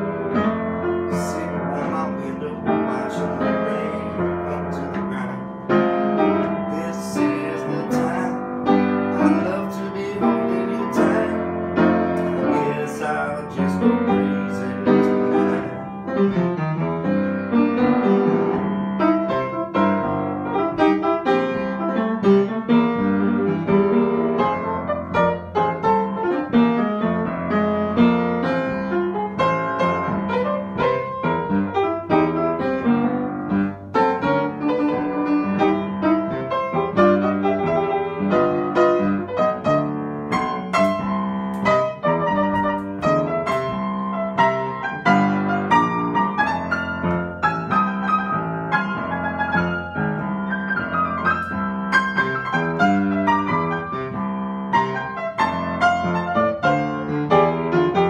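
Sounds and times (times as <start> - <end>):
piano playing: 0.0 - 58.0.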